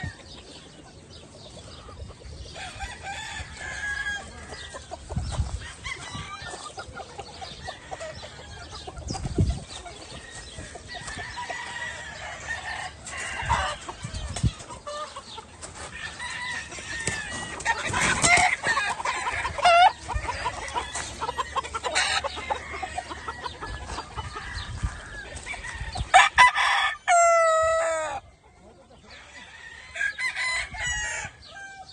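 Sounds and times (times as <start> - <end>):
chickens clucking: 0.0 - 31.9
rooster crowing: 24.3 - 28.2.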